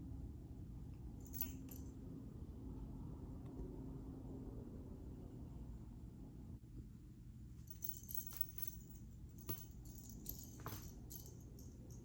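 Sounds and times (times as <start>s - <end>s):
cat toy jingling and rattling: 1.2s - 1.8s, 7.7s - 12.0s.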